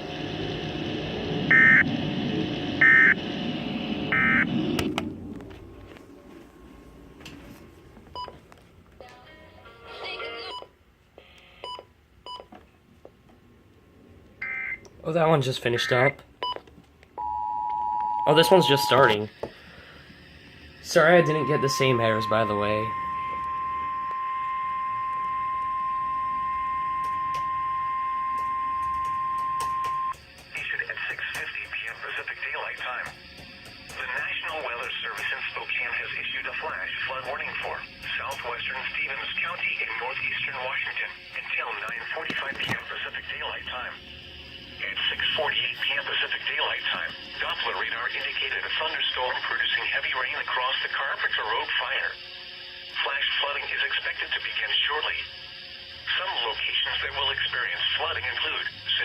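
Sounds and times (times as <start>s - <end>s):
steady alarm tone: 0.0s - 5.8s, 17.2s - 59.0s
radio static: 0.0s - 6.5s, 18.3s - 19.6s, 20.8s - 24.6s, 30.0s - 44.1s, 44.7s - 52.2s, 52.9s - 55.3s, 56.0s - 59.0s
buzzing digital data tones: 0.1s - 4.6s, 20.7s - 31.0s.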